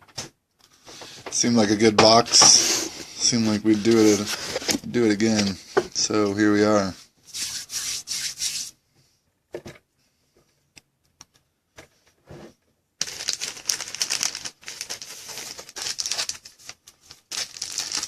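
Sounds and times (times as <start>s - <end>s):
packaging rustling and crinkling: 13.0s - 18.0s.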